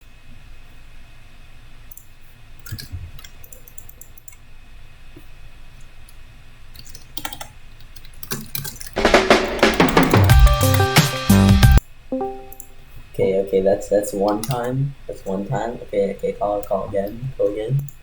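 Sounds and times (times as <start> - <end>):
computer keyboard clicks: 1.9 - 4.4, 6.8 - 9.0, 14.4 - 14.6.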